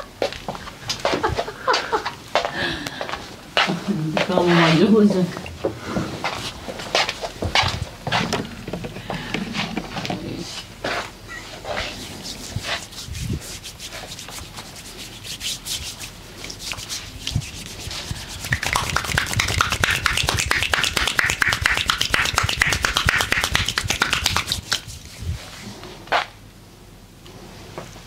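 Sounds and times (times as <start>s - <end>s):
hands rubbing skin: 9.5s - 26.3s.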